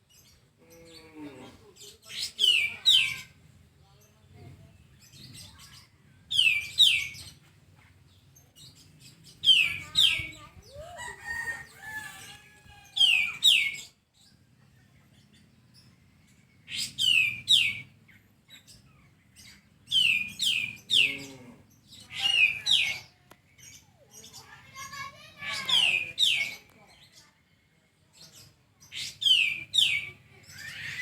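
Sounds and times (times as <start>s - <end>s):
bird chattering calls: 21.9s - 26.7s, 28.9s - 31.0s.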